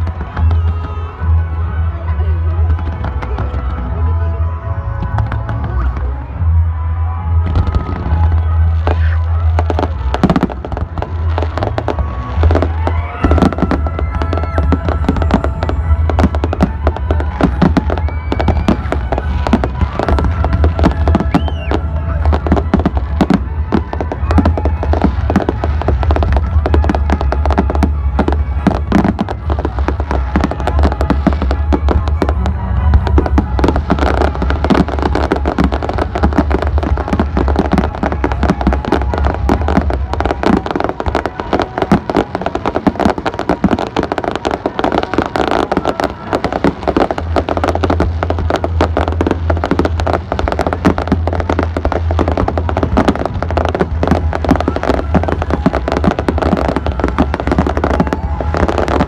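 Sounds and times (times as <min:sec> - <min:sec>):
fireworks bangs and crackling pops: 0:00.0 - 0:06.2, 0:07.4 - 0:59.0.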